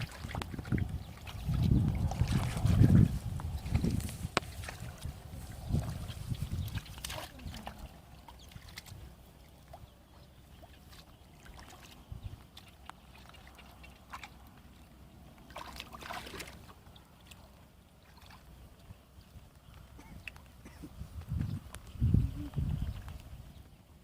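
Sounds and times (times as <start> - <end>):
small knocks and drips: 0.0 - 5.1, 5.7 - 22.0
water splash: 0.0 - 5.1, 15.5 - 17.4
water sloshing and trickling: 0.0 - 24.0.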